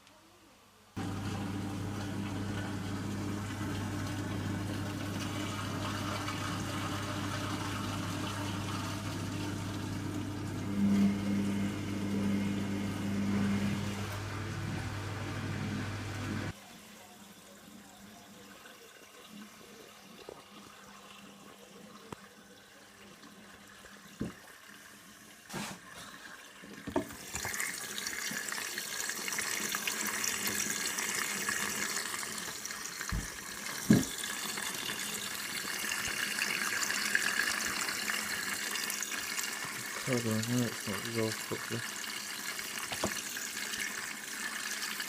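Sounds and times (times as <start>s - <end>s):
washing machine hum: 1.0s - 16.6s, 23.0s - 45.0s
water hissing into machine: 27.1s - 45.0s.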